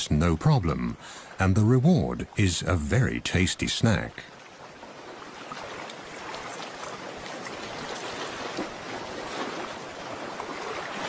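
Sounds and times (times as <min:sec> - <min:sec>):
water trickling over rocks: 0:00.0 - 0:11.0.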